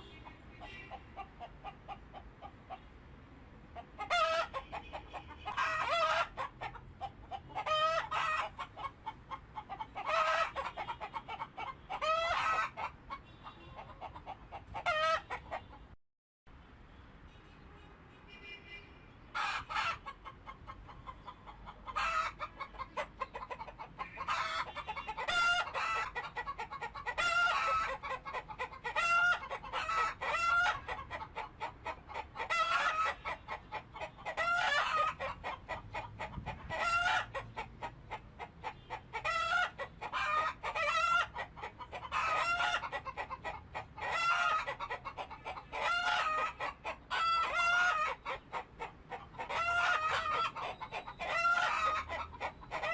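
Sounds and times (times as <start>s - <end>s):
chickens clucking: 0.0s - 3.0s, 3.8s - 16.0s, 19.3s - 52.9s.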